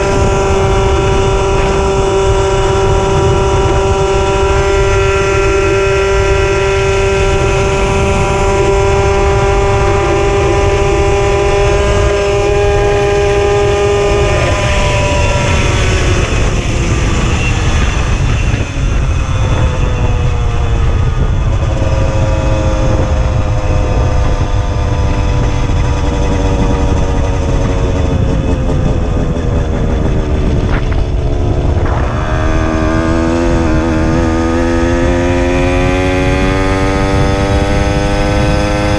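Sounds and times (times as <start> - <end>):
moped engine running: 0.0 - 38.9
wind rumble on microphone: 0.0 - 38.9.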